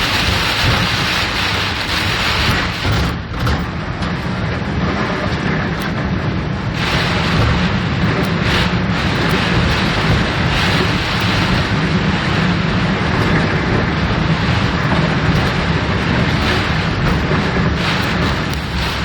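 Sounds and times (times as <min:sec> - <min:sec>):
deep rumble: 0:00.0 - 0:19.0
road noise: 0:00.0 - 0:19.0
water rushing: 0:04.7 - 0:19.0.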